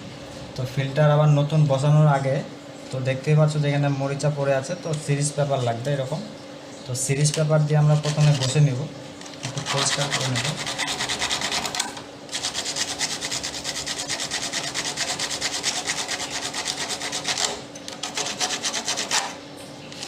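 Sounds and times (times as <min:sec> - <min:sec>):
emery paper rubbing on pipe: 0:07.9 - 0:08.6, 0:09.4 - 0:19.4.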